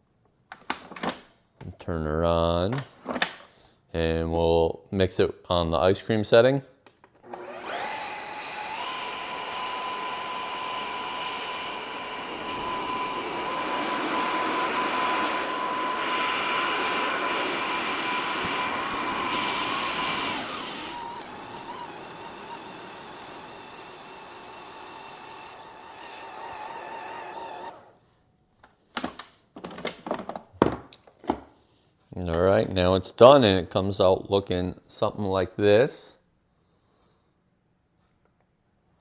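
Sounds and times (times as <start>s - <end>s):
high motor whine: 7.4s - 27.8s.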